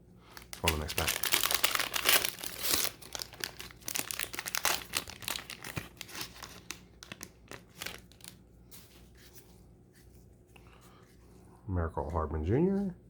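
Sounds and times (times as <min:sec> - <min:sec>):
card pack wrapper tearing and crinkling: 0:00.3 - 0:08.4.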